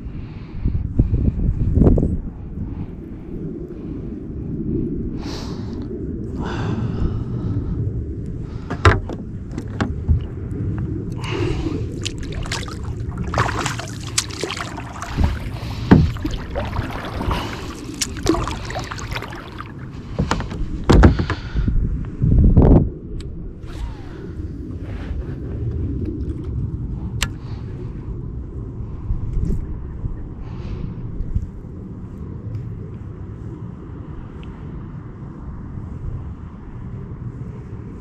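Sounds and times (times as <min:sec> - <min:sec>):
wind rumble on microphone: 0:00.0 - 0:38.0
kayak knocking on water: 0:08.7 - 0:10.3, 0:12.0 - 0:21.4
sharp knocks against hull: 0:08.7 - 0:10.3, 0:13.4 - 0:17.3, 0:20.2 - 0:21.5.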